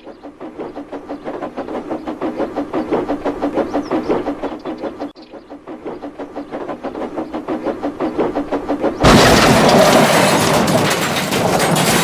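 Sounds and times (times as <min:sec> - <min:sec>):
fast even rattling: 0:06.1 - 0:12.0
debris smashing and clattering: 0:09.0 - 0:12.0
loud crash: 0:09.0 - 0:12.0.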